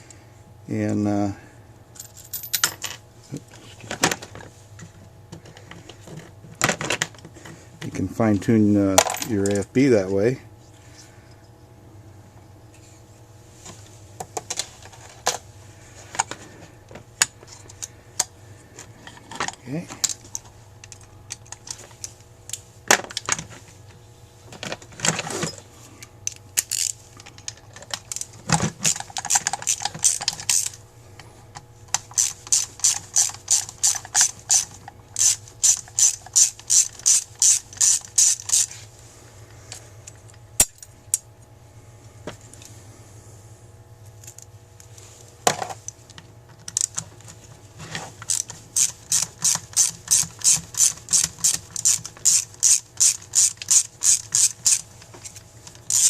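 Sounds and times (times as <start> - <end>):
ratchet tool clicking: 28.8 - 30.8, 32.0 - 38.7, 48.2 - 54.9.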